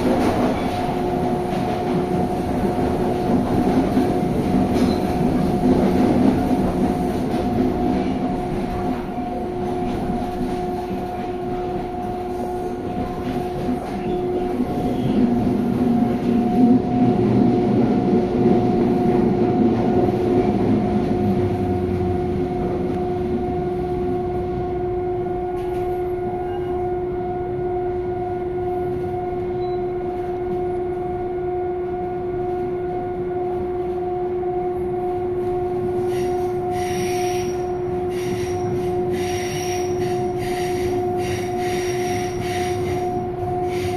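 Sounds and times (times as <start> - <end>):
wheel and rail running noise: 0.0 - 24.5
train interior hum with tones: 0.0 - 43.9.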